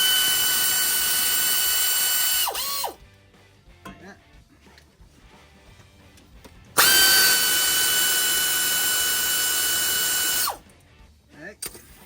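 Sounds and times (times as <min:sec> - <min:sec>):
power tool motor whine: 0:00.0 - 0:03.0, 0:06.8 - 0:10.6.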